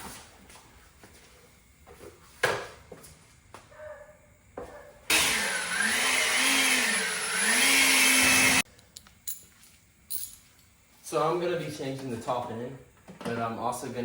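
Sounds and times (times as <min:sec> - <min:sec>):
small electric motor running: 0:05.1 - 0:08.6.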